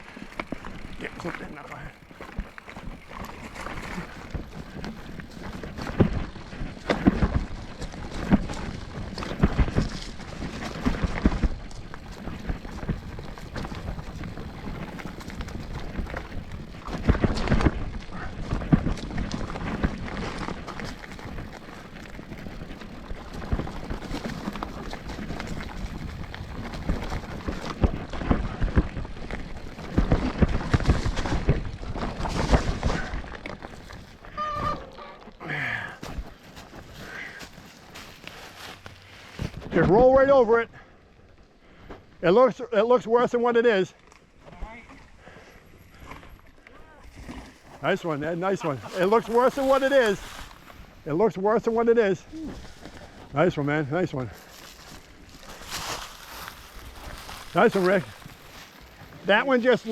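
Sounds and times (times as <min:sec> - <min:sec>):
bike rolling over rough ground: 0:00.0 - 0:59.9
bike knocks and rattles: 0:00.2 - 0:35.0.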